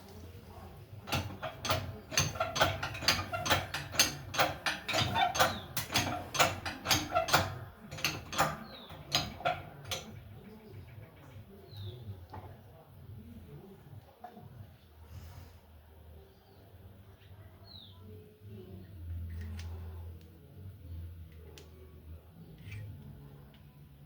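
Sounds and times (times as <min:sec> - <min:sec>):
metallic clicks and knocks: 0:01.1 - 0:11.5.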